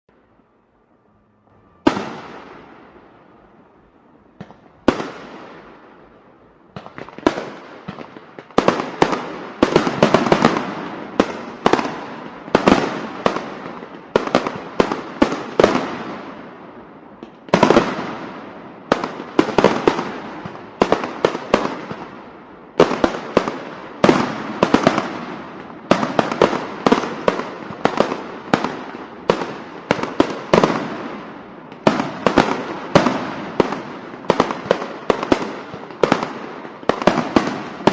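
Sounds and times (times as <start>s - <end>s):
firecrackers banging: 1.3s - 37.9s.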